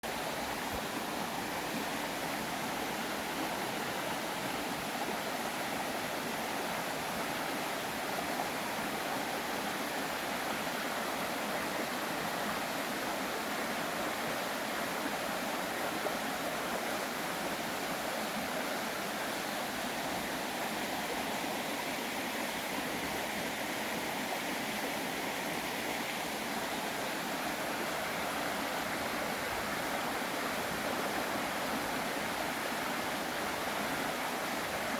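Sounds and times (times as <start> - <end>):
stream water rushing: 0.0 - 34.9.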